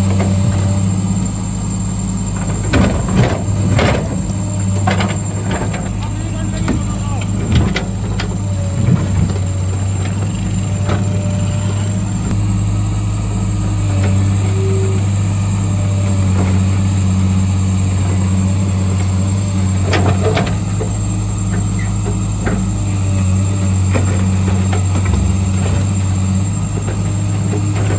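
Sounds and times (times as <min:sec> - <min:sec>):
heavy diesel engine running: 0:00.0 - 0:27.9
faint knocks of work: 0:02.2 - 0:12.6, 0:13.8 - 0:27.9.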